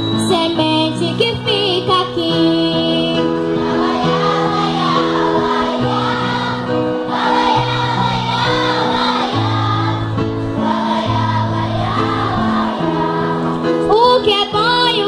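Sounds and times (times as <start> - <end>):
choir singing: 3.5 - 13.9.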